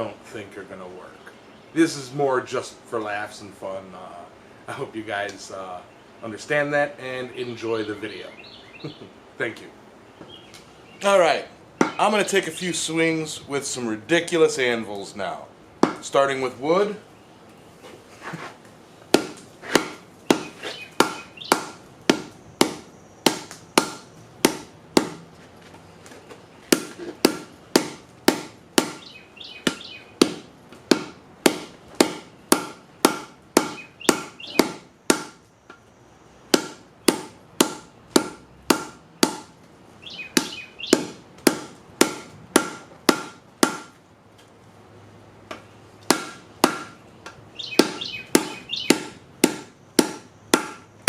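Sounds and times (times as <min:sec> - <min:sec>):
hammer striking metal: 0:29.7 - 0:35.4, 0:40.4 - 0:43.9, 0:46.1 - 0:47.0, 0:47.8 - 0:50.8.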